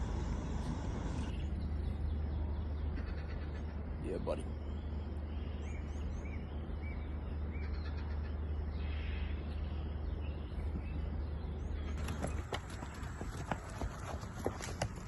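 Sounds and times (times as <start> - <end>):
small birds chirping: 0.0 - 15.0
steady low rumble: 0.0 - 15.0.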